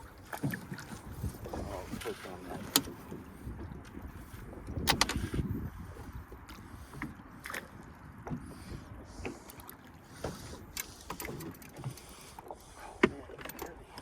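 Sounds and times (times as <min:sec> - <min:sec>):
low rumble of wind and water: 0:00.0 - 0:14.0
fishing gear knocks and clicks: 0:01.4 - 0:03.2, 0:04.7 - 0:05.4.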